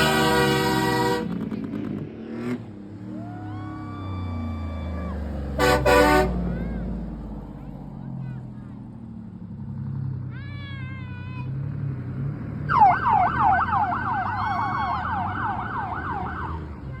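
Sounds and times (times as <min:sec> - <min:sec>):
truck engine rumble: 0:00.0 - 0:17.0
siren yelping: 0:12.7 - 0:17.0.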